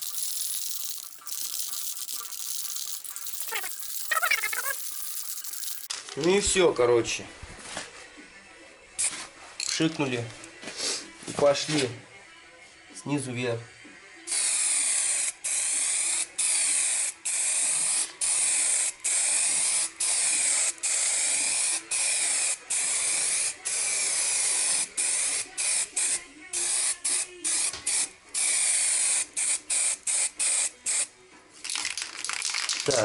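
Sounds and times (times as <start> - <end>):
aerosol can spraying: 0.0 - 5.9, 14.3 - 31.1.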